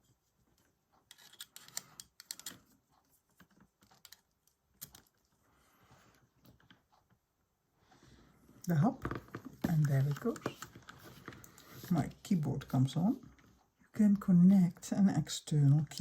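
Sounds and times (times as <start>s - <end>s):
plastic keyboard clicks: 1.1s - 2.7s.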